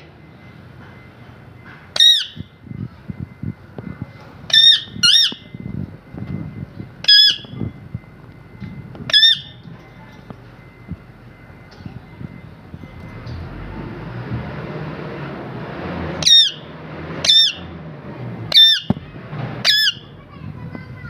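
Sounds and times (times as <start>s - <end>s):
parrot squawking: 2.0s - 2.4s, 4.5s - 5.4s, 7.0s - 7.5s, 9.1s - 9.6s, 16.2s - 17.7s, 18.5s - 18.9s, 19.6s - 20.1s
faint low rumble: 2.4s - 14.7s.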